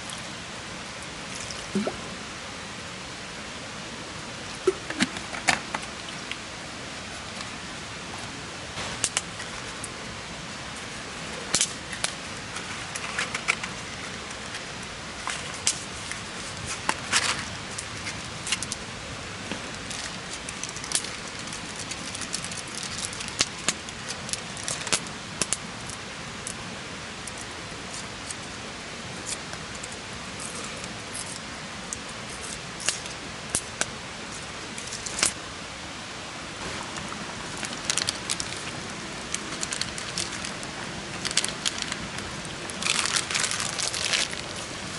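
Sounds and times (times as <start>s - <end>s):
steady fire hiss: 0.0s - 44.9s
campfire crackling and popping: 8.8s - 10.0s, 11.5s - 12.2s, 36.6s - 44.9s.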